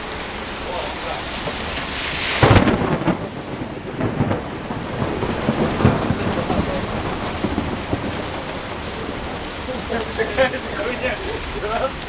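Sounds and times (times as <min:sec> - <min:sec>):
heavy downpour: 0:00.0 - 0:12.0
thunder rumbling: 0:00.0 - 0:12.0
lightning crack: 0:01.0 - 0:12.0.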